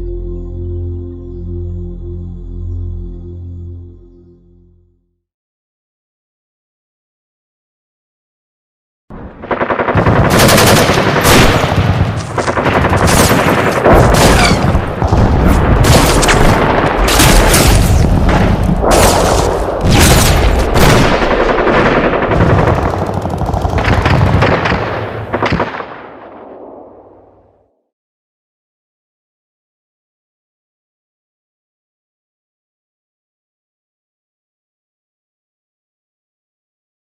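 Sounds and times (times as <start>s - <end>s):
automatic gunfire: 9.4s - 26.5s
single gunshots: 10.3s - 22.0s
explosion booms: 13.1s - 21.4s.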